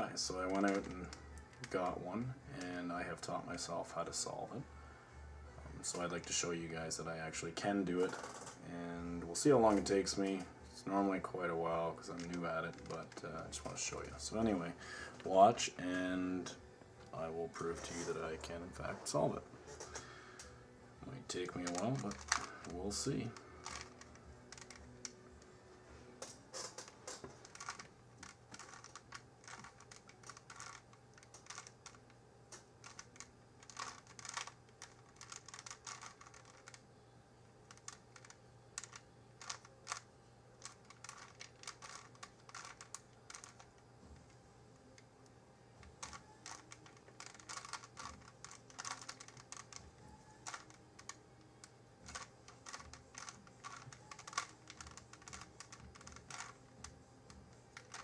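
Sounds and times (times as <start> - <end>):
puzzle cube clicking: 0.4 - 1.7, 12.1 - 13.2, 21.5 - 25.4, 26.6 - 36.8, 37.7 - 43.8, 45.8 - 58.0.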